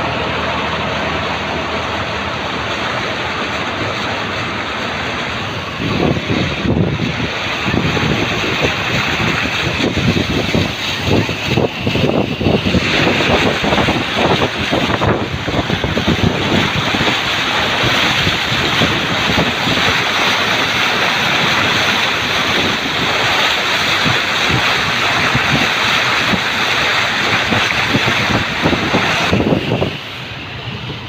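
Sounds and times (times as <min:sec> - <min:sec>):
rushing water: 0:00.0 - 0:31.0.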